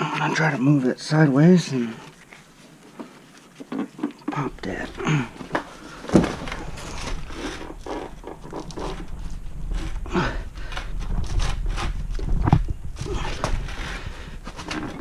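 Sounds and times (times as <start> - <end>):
tire levers scraping rubber tire: 3.5 - 15.0.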